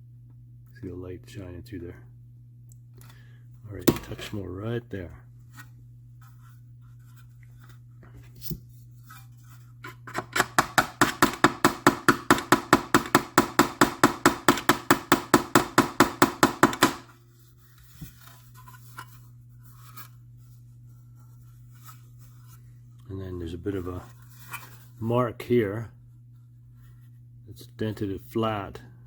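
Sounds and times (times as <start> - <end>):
hammer tapping metal: 10.3 - 17.1.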